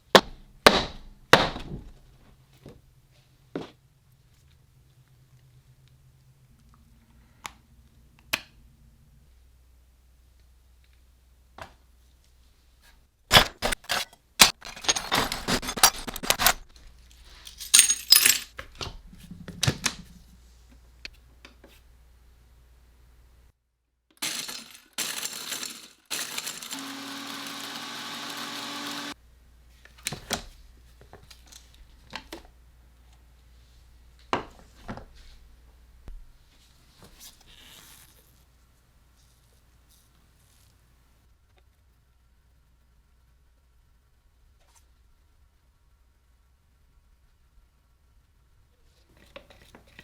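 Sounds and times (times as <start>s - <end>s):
hard objects clattering and knocking: 13.3s - 16.8s
small motorised tool running: 25.1s - 29.2s.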